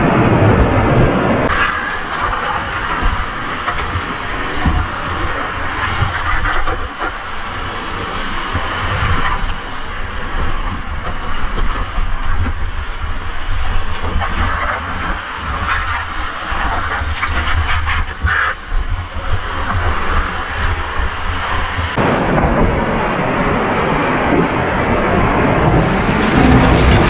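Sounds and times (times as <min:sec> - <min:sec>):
whitewater rushing in stream: 0:00.0 - 0:22.7, 0:23.9 - 0:27.0
low rumbling on microphone: 0:00.0 - 0:27.0.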